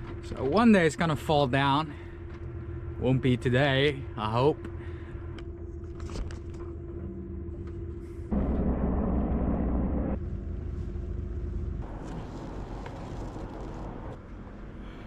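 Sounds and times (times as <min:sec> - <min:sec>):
faint steady hum: 0:00.0 - 0:15.0
low rumble: 0:01.4 - 0:14.9
rushing noise: 0:08.3 - 0:11.0.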